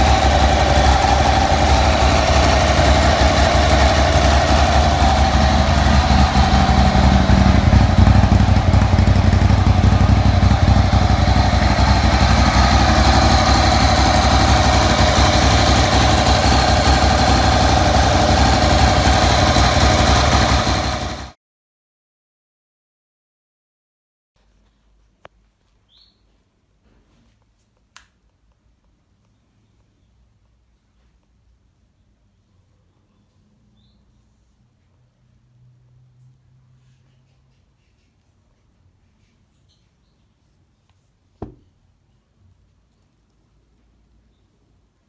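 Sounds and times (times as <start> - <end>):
abnormal mechanical engine noise: 0.0 - 21.4
motorcycle engine idling: 0.0 - 21.4, 41.4 - 41.7.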